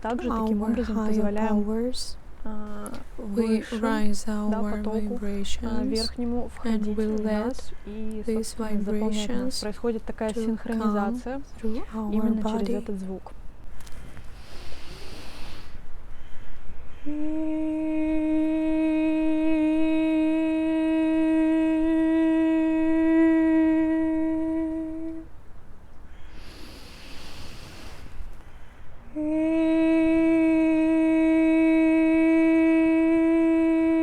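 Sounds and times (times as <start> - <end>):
woman singing a steady vowel: 0.0 - 13.0, 17.1 - 25.3, 29.2 - 34.0
woman breathing: 14.3 - 15.8, 26.3 - 28.7.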